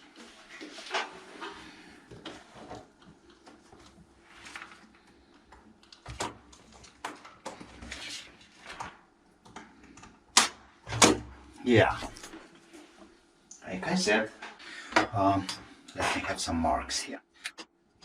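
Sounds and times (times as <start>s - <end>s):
sharp plastic snap: 10.3s - 11.2s.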